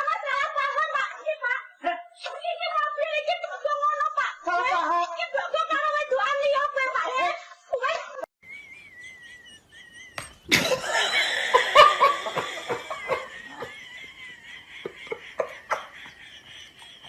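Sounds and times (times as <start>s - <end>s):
people laughing: 8.5s - 17.0s.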